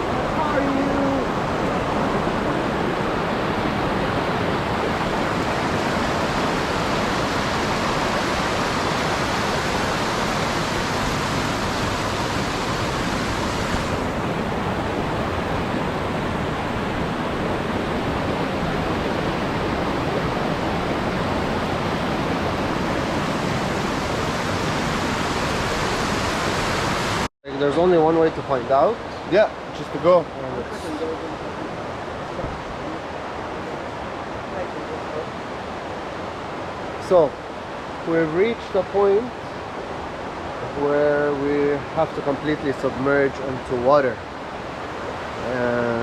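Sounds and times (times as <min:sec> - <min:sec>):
river water rushing over rocks: 0:00.0 - 0:27.3.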